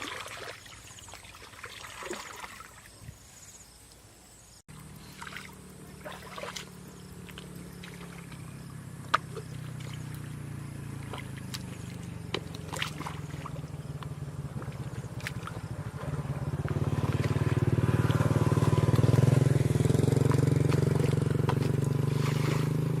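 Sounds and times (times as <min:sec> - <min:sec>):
small engine puttering: 0:04.7 - 0:23.0.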